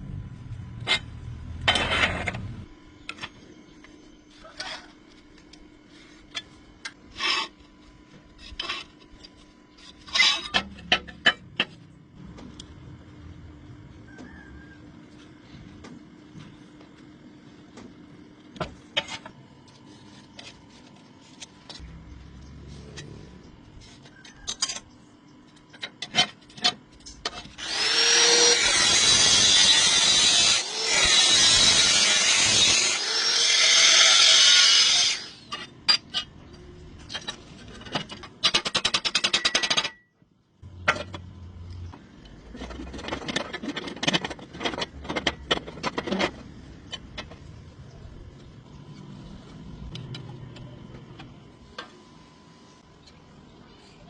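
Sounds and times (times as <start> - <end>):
power tool running: 27.6 - 35.5.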